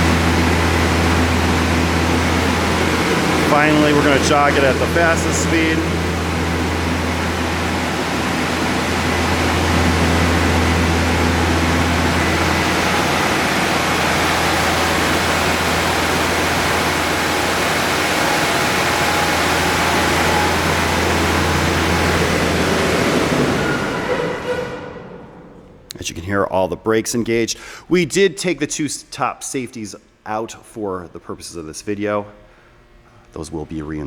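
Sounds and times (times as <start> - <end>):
belt sander rushing noise: 0.0 - 26.0
low hum: 0.0 - 27.2.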